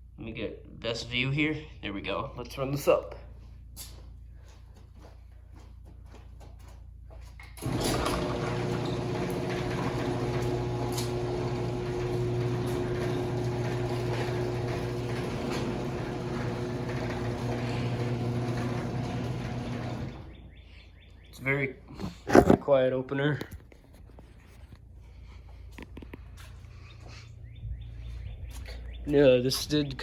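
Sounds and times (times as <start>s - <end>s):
garage door opener motor hum: 7.4s - 20.6s.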